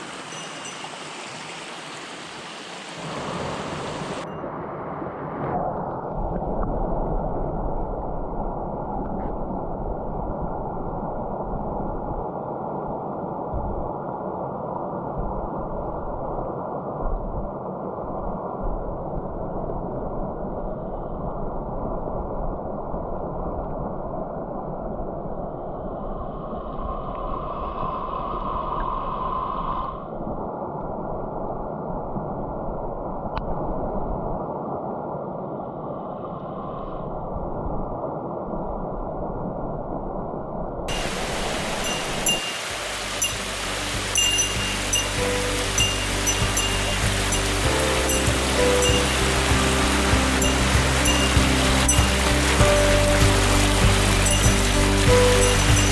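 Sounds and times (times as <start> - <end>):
muffled stream water rushing: 0.0 - 21.9, 40.9 - 55.9
steady pitched tone: 40.9 - 55.9.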